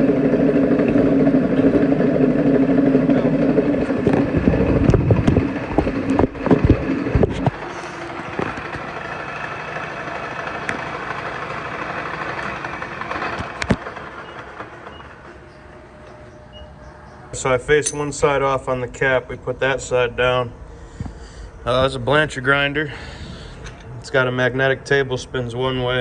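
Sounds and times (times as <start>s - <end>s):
metal lathe running: 0.0s - 18.0s
steady machine hum: 0.0s - 26.0s
metal clanks: 17.7s - 18.4s.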